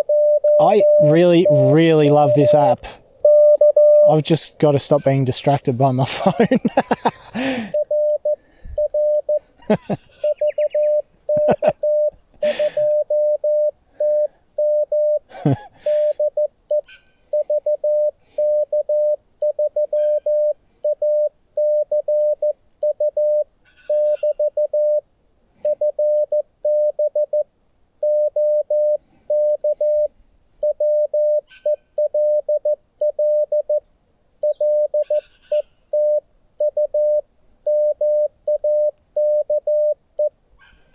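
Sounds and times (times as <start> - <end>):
morse code tone: 0.0 - 4.2, 7.7 - 9.4, 10.2 - 15.2, 17.4 - 25.0, 28.0 - 33.8, 34.4 - 40.3.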